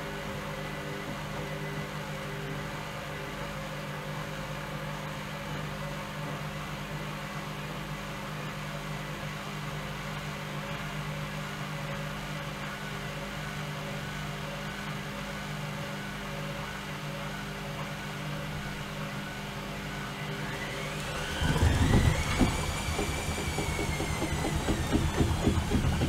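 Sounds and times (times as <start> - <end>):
washing machine motor hum: 18.2 - 26.0.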